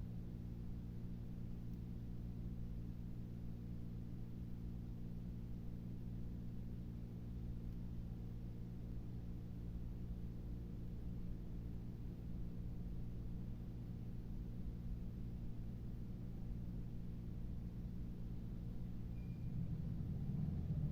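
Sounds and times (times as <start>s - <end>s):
low tonal drone: 19.1s - 20.9s.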